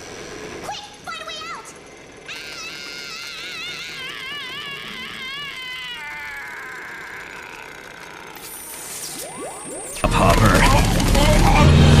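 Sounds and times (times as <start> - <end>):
high buzzing whine: 7.8 - 12.0.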